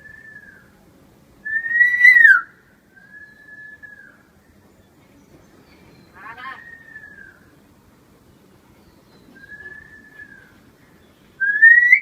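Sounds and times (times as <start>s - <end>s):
myna bird whistling: 0.0s - 0.8s, 1.4s - 4.3s, 5.7s - 7.6s, 9.0s - 12.0s.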